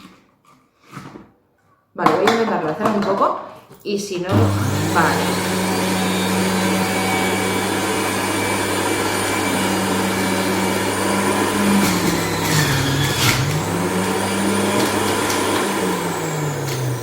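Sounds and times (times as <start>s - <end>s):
electric juicer motor humming: 4.3s - 17.0s.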